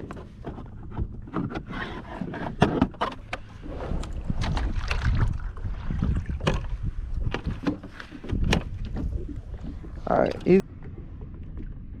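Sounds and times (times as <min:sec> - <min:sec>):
wind rumbling on microphone: 0:00.0 - 0:12.0.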